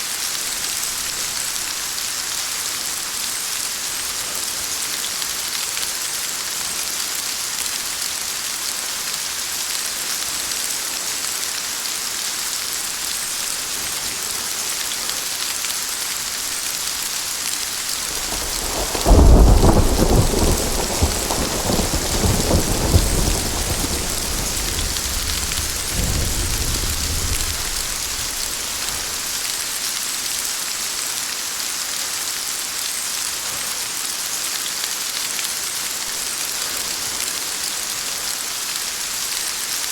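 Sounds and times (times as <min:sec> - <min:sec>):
steady rain falling: 0:00.0 - 0:39.9
thunderclap rumbling: 0:18.0 - 0:29.4.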